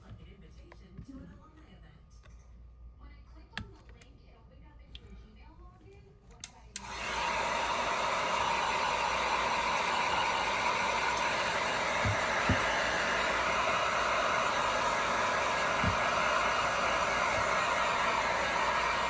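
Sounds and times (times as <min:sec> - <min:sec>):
electric blower hissing: 0:06.8 - 0:19.0.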